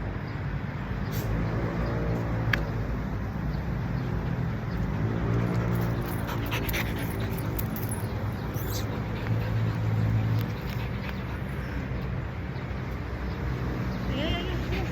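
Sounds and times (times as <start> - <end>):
dog panting and whimpering: 4.4 - 12.2, 14.0 - 14.9.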